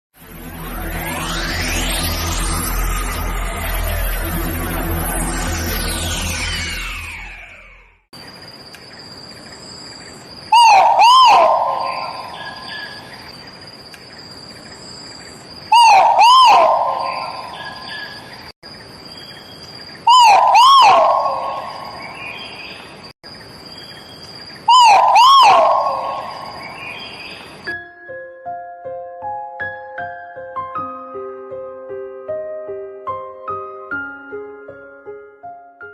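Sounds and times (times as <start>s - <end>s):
high insect whine: 0.2s - 27.7s.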